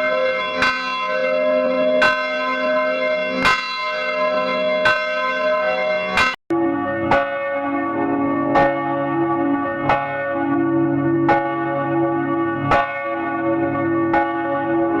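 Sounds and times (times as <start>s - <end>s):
church bell ringing: 0.0s - 15.0s.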